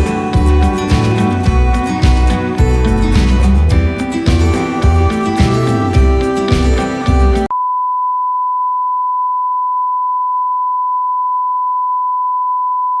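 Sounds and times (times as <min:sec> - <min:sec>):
background music: 0:00.0 - 0:07.5.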